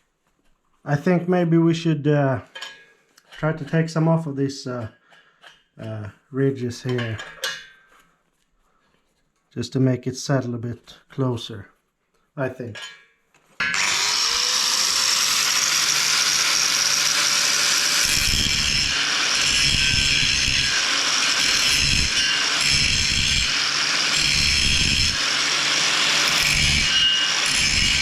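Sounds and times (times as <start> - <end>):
angle grinder grinding steel: 13.6 - 28.0.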